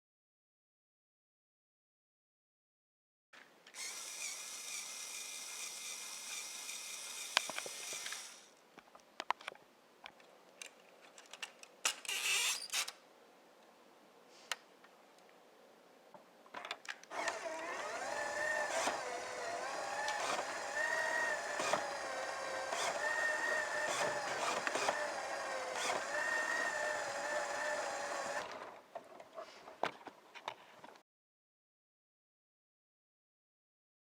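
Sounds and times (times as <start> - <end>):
small electric motor whining: 3.7 - 8.5, 17.1 - 28.6.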